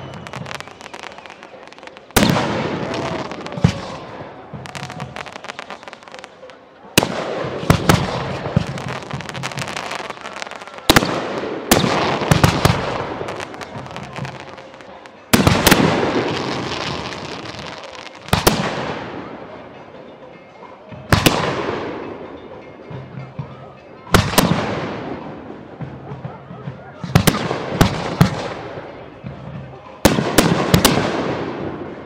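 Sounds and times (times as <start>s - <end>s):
fireworks bursting with crackling: 0.0s - 19.3s, 24.2s - 25.2s, 27.0s - 29.0s, 29.7s - 32.0s.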